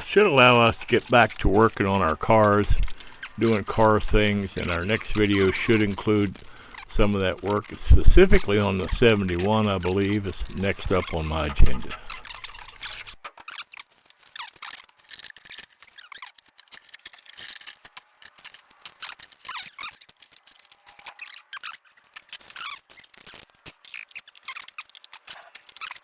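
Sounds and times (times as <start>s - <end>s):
faint high squeaks: 0.0s - 13.2s.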